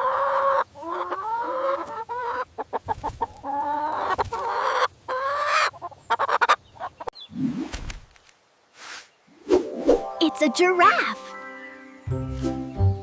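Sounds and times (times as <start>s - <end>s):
chicken squawking: 0.0s - 7.0s
chicken clucking rapidly: 0.0s - 7.2s.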